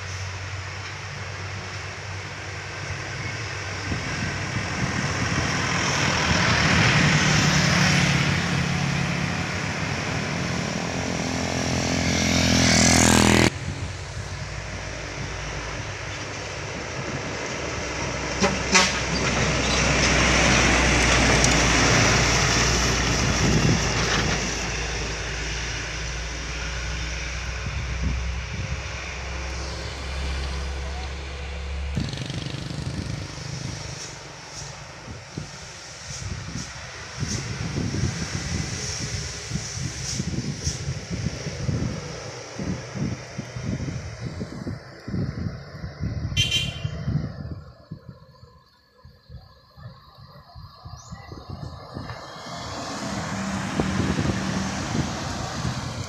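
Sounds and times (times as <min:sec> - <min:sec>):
heavy trucks and buses passing: 0:00.0 - 0:56.0
short horn toots: 0:18.4 - 0:19.1, 0:46.4 - 0:47.1
engine rising in pitch: 0:51.0 - 0:56.0.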